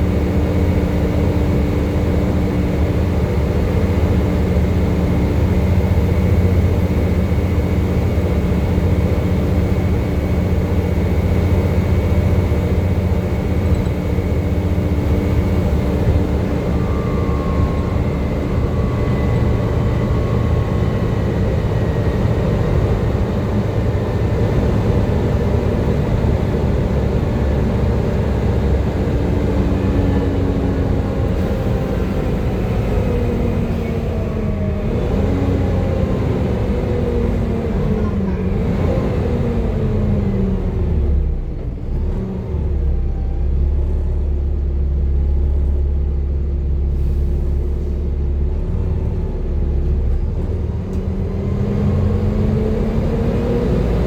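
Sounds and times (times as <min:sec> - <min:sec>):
bus diesel engine whining: 0:00.0 - 0:54.0.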